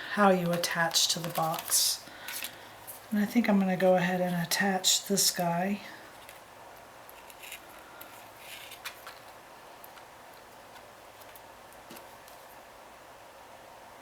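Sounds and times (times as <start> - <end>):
low hiss: 0.0 - 14.0
paper rustling: 0.3 - 3.2, 7.1 - 12.6.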